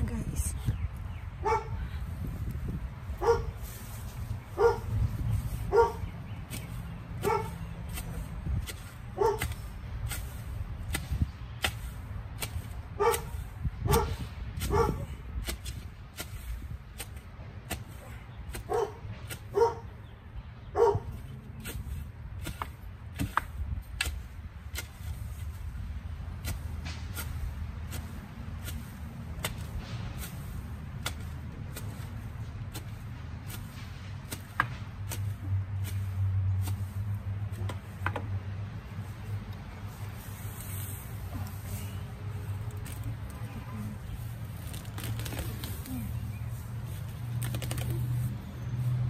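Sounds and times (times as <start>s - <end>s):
dog barking: 1.4s - 1.7s, 3.2s - 3.5s, 4.6s - 4.8s, 5.7s - 6.0s, 7.2s - 7.6s, 9.2s - 9.4s, 14.7s - 15.0s, 18.7s - 19.0s, 19.6s - 19.8s, 20.8s - 21.1s.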